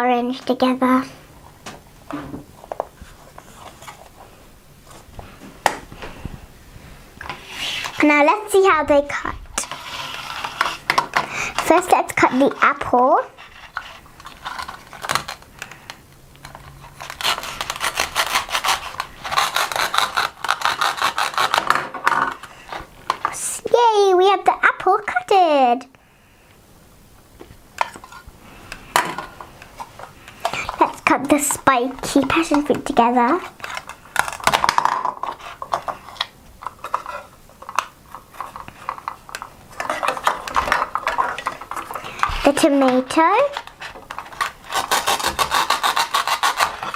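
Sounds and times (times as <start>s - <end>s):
toy knife clicking and scratching: 16.8s - 21.8s, 38.4s - 46.9s
velcro ripping: 17.0s - 21.7s, 44.6s - 46.9s.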